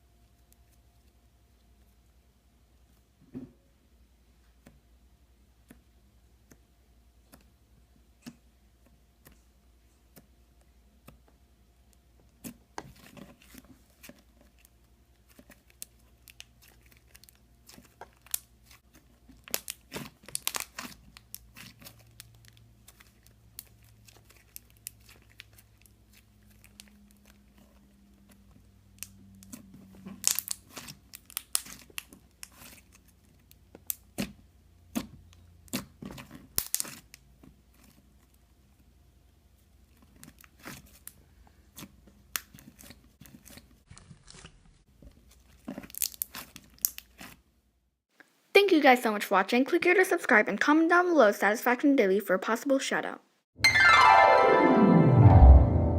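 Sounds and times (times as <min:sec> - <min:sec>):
slime crackling and popping: 0:12.4 - 0:27.8, 0:28.6 - 0:35.1, 0:35.7 - 0:38.0, 0:45.3 - 0:47.4.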